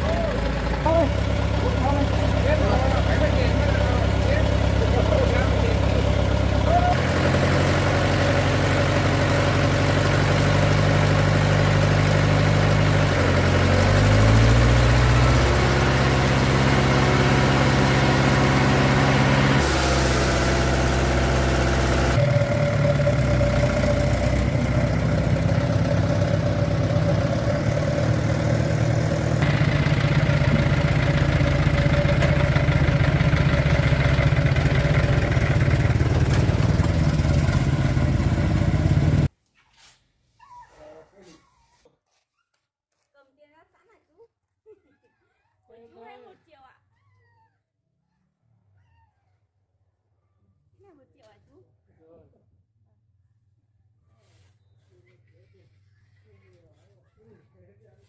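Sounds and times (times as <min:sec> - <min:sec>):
truck engine running: 0:00.0 - 0:39.3.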